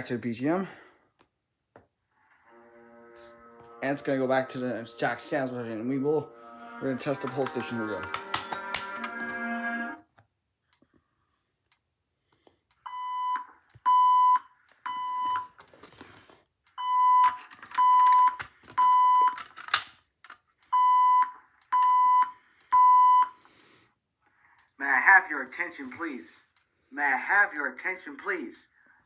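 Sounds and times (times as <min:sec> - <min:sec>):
music: 0:02.3 - 0:10.0
fire alarm beeps: 0:12.9 - 0:15.6, 0:16.8 - 0:19.4, 0:20.7 - 0:23.4.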